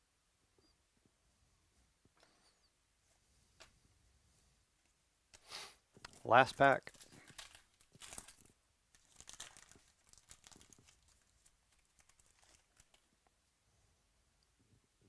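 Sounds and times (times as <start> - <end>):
wrapper crinkling and tearing: 6.1 - 13.1.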